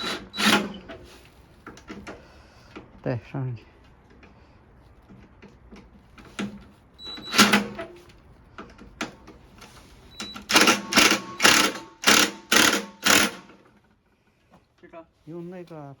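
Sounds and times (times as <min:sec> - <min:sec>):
small power tool motor bursts: 0:00.0 - 0:00.9, 0:10.2 - 0:13.5
tools clicking and knocking: 0:10.2 - 0:13.8.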